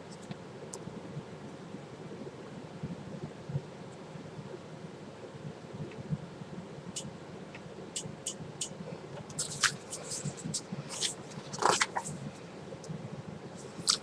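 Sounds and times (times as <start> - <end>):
paper rustling: 9.3 - 12.2.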